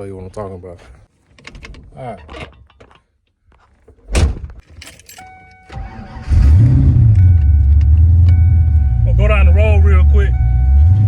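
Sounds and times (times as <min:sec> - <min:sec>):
thump: 0:04.0 - 0:04.6
car engine starting and idling: 0:05.2 - 0:11.0.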